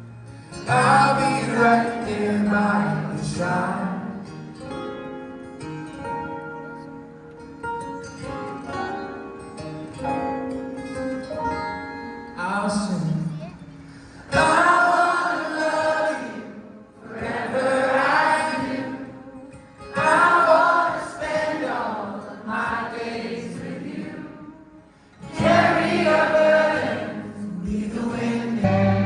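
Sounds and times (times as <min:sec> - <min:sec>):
several voices singing together: 0:14.3 - 0:19.2, 0:19.9 - 0:24.4, 0:25.3 - 0:29.0.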